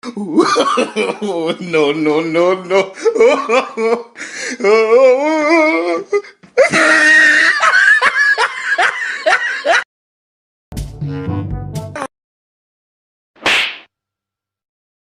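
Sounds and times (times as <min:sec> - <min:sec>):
person laughing loudly: 0:00.0 - 0:09.9.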